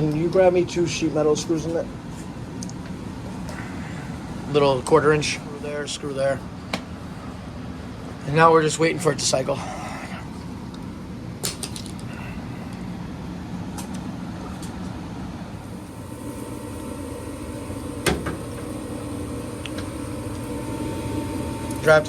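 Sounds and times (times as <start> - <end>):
low furnace hum: 0.0 - 22.0
inducer motor whine: 15.4 - 22.0.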